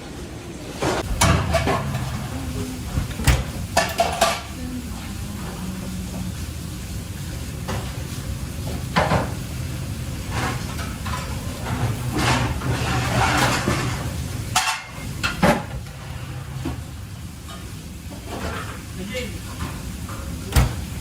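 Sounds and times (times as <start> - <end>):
cookware knocks and clatters: 1.0 - 2.1, 10.4 - 15.8
steady low hum: 1.0 - 12.7.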